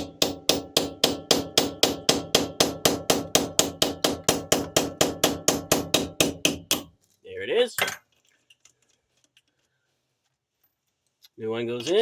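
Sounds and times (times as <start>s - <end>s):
hammer striking metal nut: 0.0s - 6.9s.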